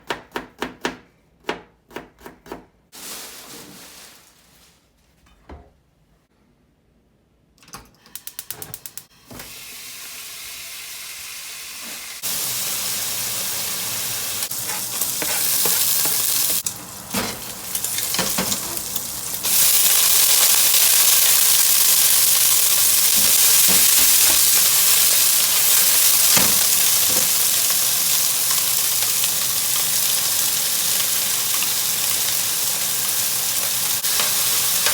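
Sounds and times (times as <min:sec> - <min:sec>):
offal sizzling in a pan: 0:09.6 - 0:34.9
spatula knocking and scraping: 0:14.6 - 0:17.5.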